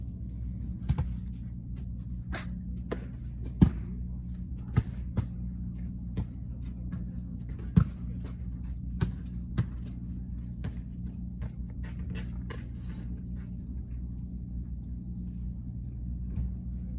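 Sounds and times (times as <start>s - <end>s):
cat sneezing: 2.3s - 2.6s.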